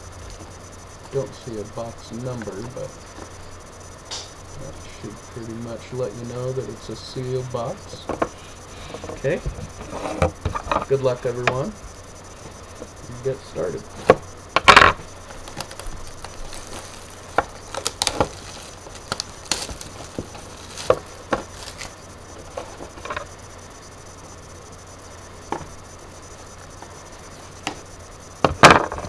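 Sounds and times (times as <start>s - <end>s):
cardboard box being opened: 15.4s - 21.9s.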